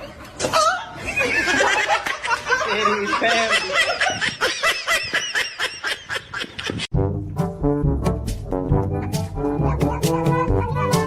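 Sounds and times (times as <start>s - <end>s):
brass music: 6.9s - 11.0s.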